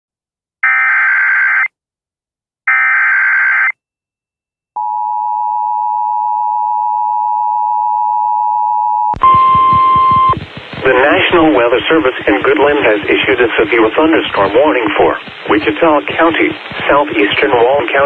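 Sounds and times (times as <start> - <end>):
two-tone attention signal: 4.8 - 10.4
noise burst with single tone: 9.1 - 18.0
warbling digital data tones: 9.2 - 12.2.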